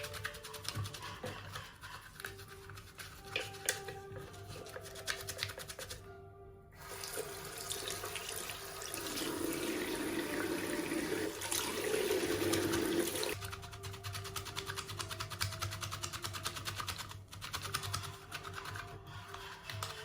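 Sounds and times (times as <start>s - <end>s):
tap water running into sink: 6.8s - 13.4s.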